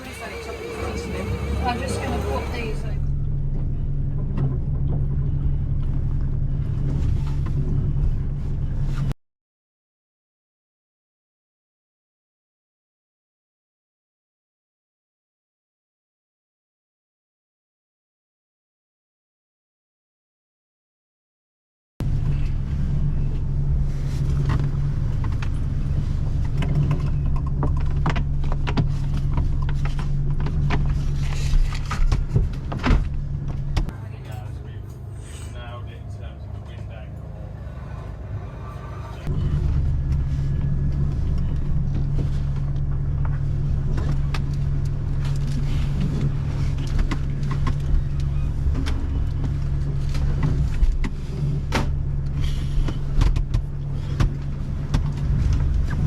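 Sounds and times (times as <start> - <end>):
low mechanical hum: 0.0 - 9.1, 22.0 - 56.0.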